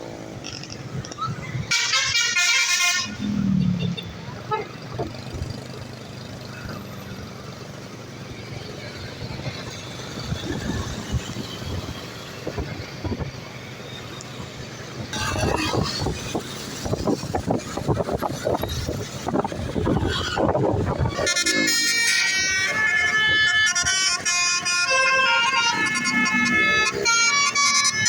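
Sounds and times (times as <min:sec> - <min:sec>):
bus engine: 0:00.0 - 0:28.0
roadside traffic: 0:00.0 - 0:28.0
multi-tone bus horn: 0:01.7 - 0:04.2, 0:21.0 - 0:28.0.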